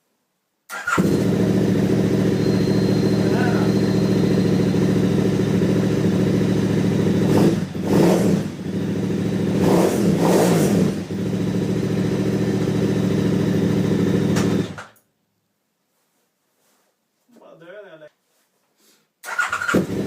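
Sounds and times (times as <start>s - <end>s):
motorcycle engine idling and revving: 0.8s - 14.9s, 19.3s - 20.0s.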